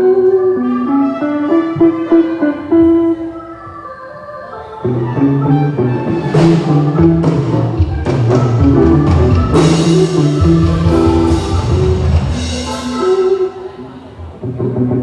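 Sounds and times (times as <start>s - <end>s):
guitar: 0.0s - 15.0s
bass notes: 4.8s - 15.0s
live band playing: 4.8s - 15.0s
drum hits: 6.3s - 14.5s.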